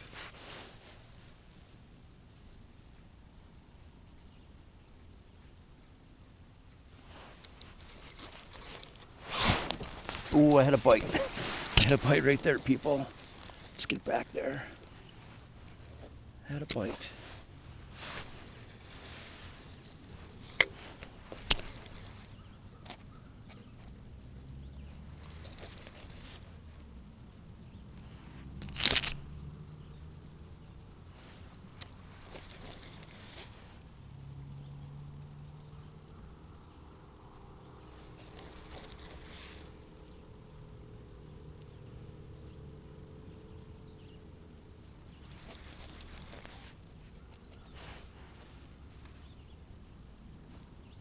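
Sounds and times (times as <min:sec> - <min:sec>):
bird chirping: 0:04.1 - 0:05.6, 0:07.2 - 0:09.4, 0:10.3 - 0:15.6, 0:18.6 - 0:28.5, 0:29.1 - 0:30.8, 0:37.5 - 0:44.4, 0:49.1 - 0:49.8
faint ticks: 0:18.1 - 0:51.0.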